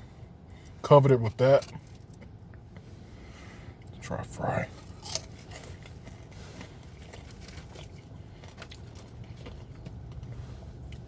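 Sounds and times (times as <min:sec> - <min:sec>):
low steady hum: 0:00.0 - 0:11.0
chewing french fry: 0:04.7 - 0:11.0.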